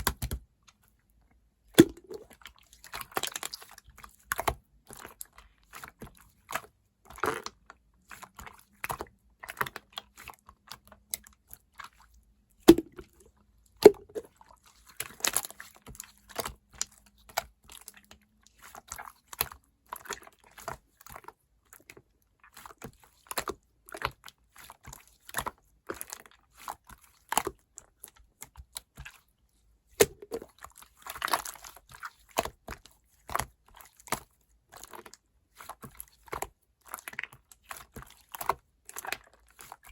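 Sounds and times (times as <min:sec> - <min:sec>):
slime popping: 0:01.8 - 0:02.3, 0:12.7 - 0:13.2
slime squeezed by hand: 0:01.8 - 0:02.4.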